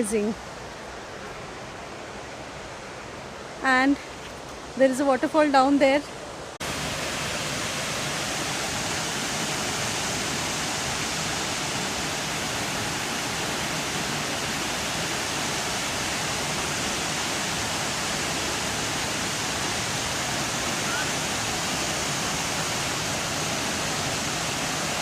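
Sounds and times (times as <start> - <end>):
waterfall rushing: 6.5 - 25.0.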